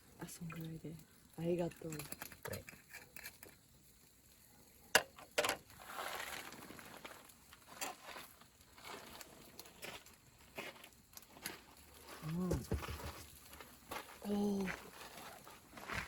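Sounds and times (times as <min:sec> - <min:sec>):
clicks and knocks of small objects: 0:01.6 - 0:03.8, 0:04.9 - 0:16.0
light rustling and crinkling: 0:05.2 - 0:16.0.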